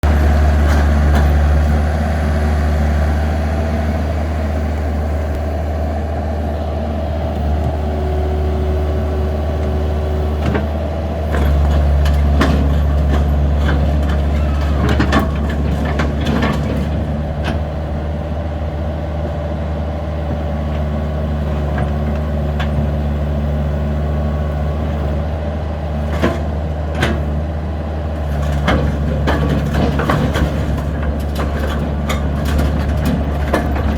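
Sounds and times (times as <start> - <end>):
diesel engine running: 0.0 - 33.9
metallic knocks and clanks: 11.3 - 17.6.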